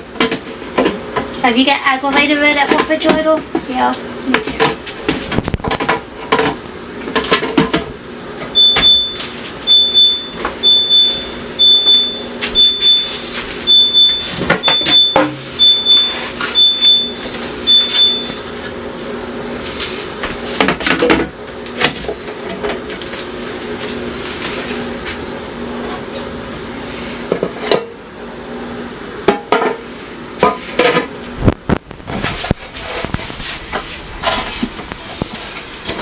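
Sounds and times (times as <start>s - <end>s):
items clattering in fridge: 0.0s - 18.8s, 30.4s - 36.0s
refrigerator alarm beeping: 8.5s - 18.7s.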